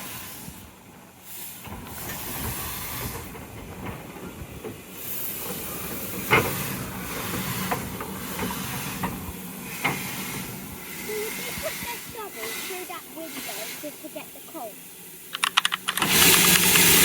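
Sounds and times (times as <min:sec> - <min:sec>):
steam train hiss and rumble: 0:00.0 - 0:17.0.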